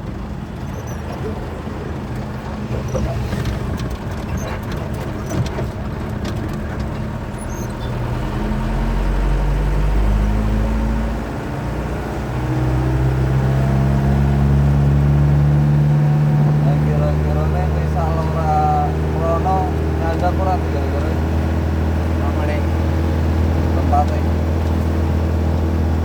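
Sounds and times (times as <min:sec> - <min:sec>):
truck engine accelerating: 0:00.0 - 0:26.0
clicks and rattles: 0:00.9 - 0:07.4.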